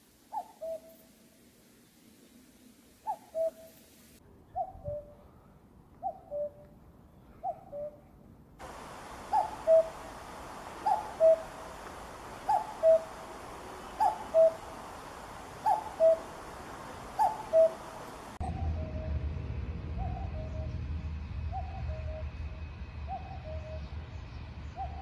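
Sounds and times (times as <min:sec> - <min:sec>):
cuckoo calling: 0:00.3 - 0:01.1, 0:03.0 - 0:03.8, 0:06.0 - 0:06.7, 0:08.6 - 0:18.9
low rumble: 0:18.4 - 0:24.8.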